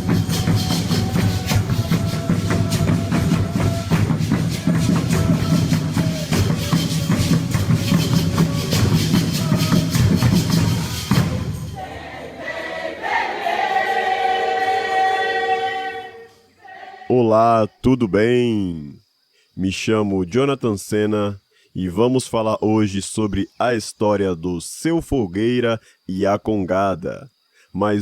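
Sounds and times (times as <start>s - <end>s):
drums and tambourines beating: 0.0s - 15.2s
people singing long notes: 0.0s - 17.5s.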